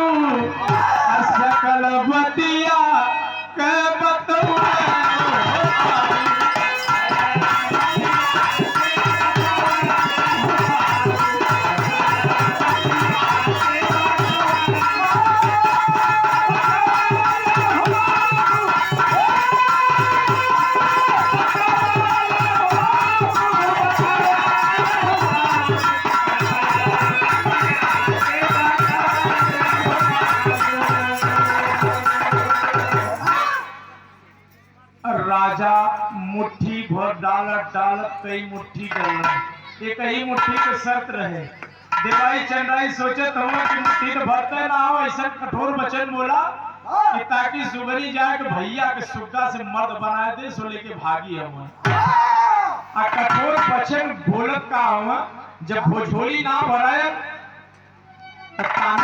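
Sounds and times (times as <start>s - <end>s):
dholak drum rhythm: 0.0s - 34.1s, 35.0s - 46.2s, 51.7s - 52.4s, 53.0s - 57.5s, 58.6s - 59.0s
harmonium chords and melody: 4.6s - 33.2s.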